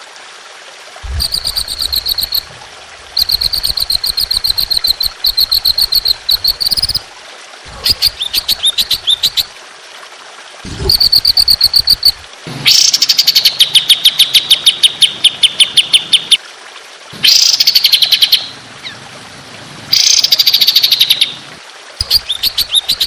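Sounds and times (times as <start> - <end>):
songbird rapid chip notes: 1.1 - 7.0, 7.8 - 9.5, 10.8 - 12.2, 22.0 - 23.0.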